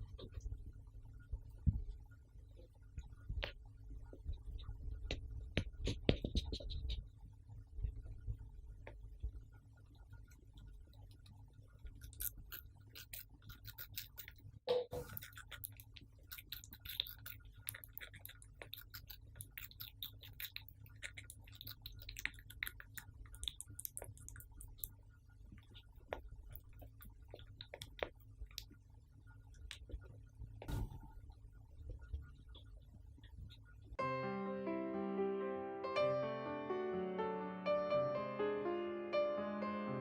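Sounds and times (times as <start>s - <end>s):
low steady hum: 0.0s - 36.1s
hamster nibbling: 2.5s - 7.2s, 10.1s - 30.8s.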